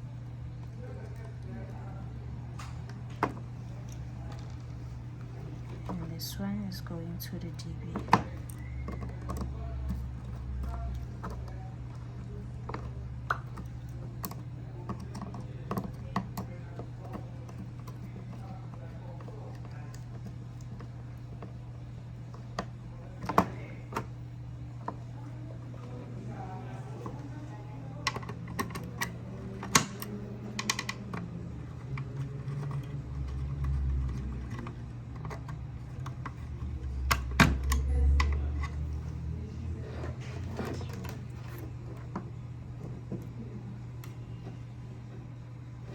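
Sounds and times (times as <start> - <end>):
steady low hum: 0.0 - 45.9
small clicks and taps of wiring work: 7.9 - 25.2, 27.9 - 39.2, 40.4 - 45.3.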